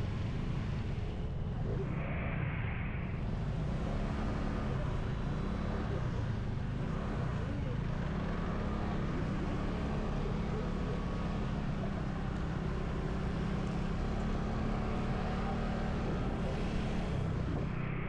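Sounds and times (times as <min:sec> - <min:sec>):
wind and road noise: 0:00.0 - 0:18.0
motorcycle engine running: 0:03.4 - 0:17.6.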